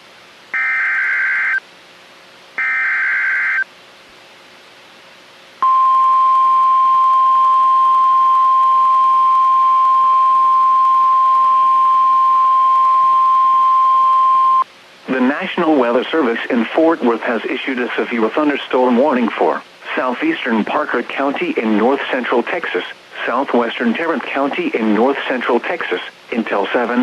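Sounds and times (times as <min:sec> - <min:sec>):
steady alarm tone: 0:00.6 - 0:01.6, 0:02.6 - 0:03.7, 0:05.6 - 0:14.6
buzzing digital data bursts: 0:02.6 - 0:03.6.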